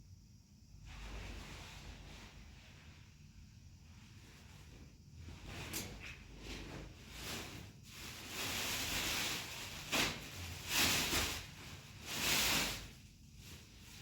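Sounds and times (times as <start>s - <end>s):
rustling handling noise: 3.9s - 14.0s.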